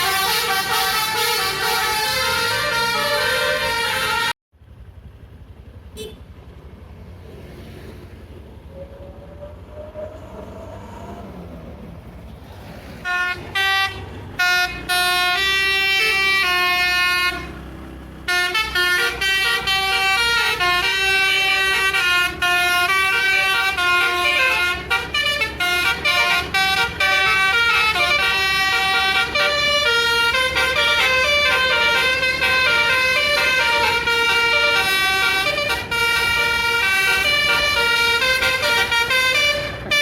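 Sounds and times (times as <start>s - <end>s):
musical air horn melody: 0.0s - 4.4s, 13.0s - 17.6s, 18.3s - 40.0s.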